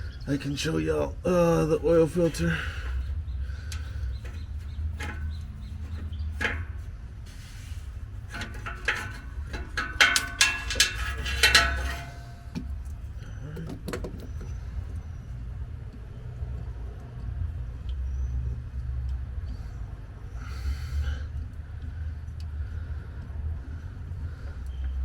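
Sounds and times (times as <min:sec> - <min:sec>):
steady low hum: 0:00.0 - 0:13.6
metal tool clanks and scrapes: 0:03.6 - 0:12.8.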